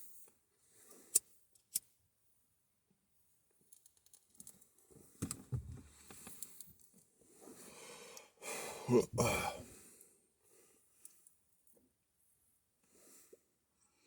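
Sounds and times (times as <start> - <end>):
rustling and knocks of handling: 4.9 - 6.5
dull thump: 5.2 - 6.0.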